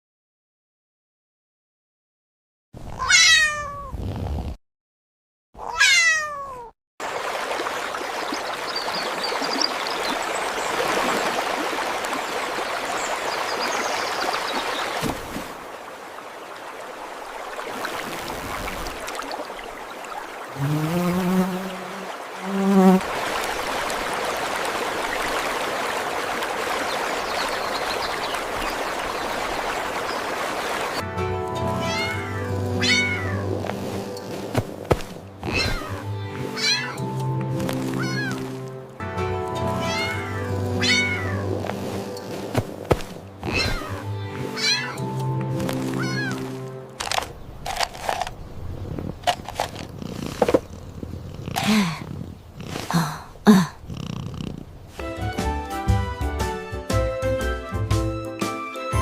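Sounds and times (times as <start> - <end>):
cat meowing: 3.0 - 3.9, 5.6 - 6.7, 31.8 - 33.4, 36.6 - 37.0, 38.0 - 38.4, 39.8 - 41.4, 44.6 - 45.0, 46.0 - 46.4.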